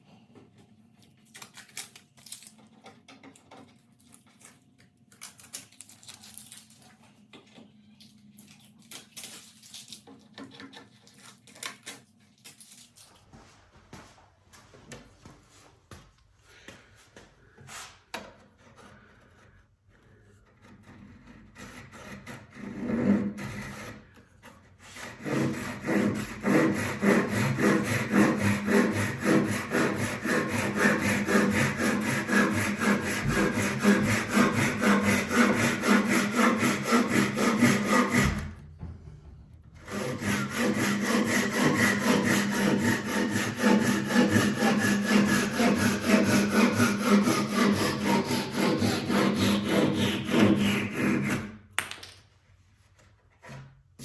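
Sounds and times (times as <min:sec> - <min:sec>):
pull saw cutting wood: 0:20.5 - 0:38.6, 0:39.8 - 0:51.6.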